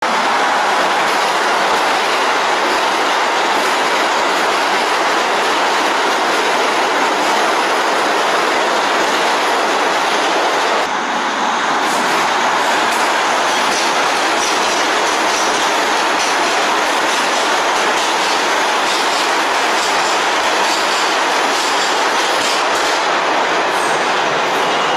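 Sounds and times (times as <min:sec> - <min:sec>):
subway train on rails: 0:00.0 - 0:24.9.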